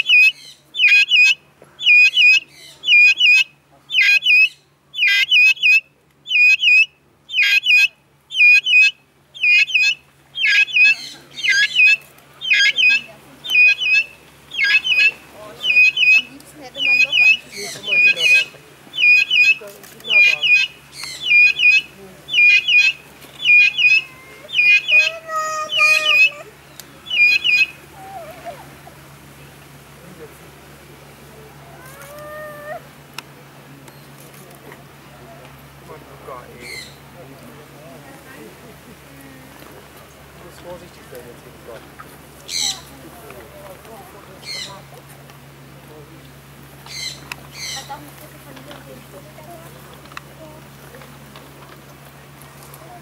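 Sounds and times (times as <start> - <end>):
guineafowl calling: 0.0 - 29.1, 31.5 - 32.9, 36.6 - 37.0, 42.0 - 42.9, 44.4 - 44.9, 46.8 - 48.0.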